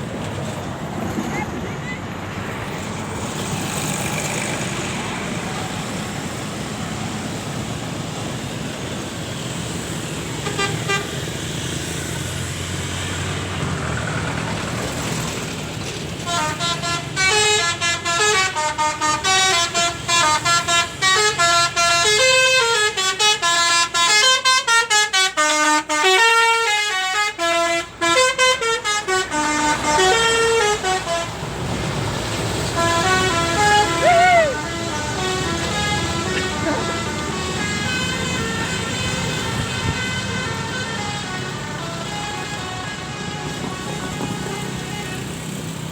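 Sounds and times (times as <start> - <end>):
bus horn playing melody: 10.2 - 11.7, 16.2 - 45.7
low engine rumble: 28.0 - 45.4.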